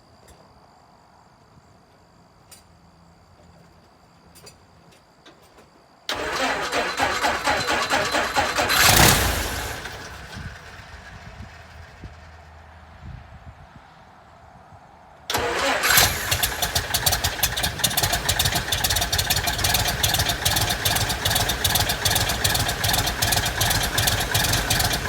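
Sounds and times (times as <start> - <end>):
aircraft engine starting and idling: 6.1 - 12.8, 15.3 - 25.0.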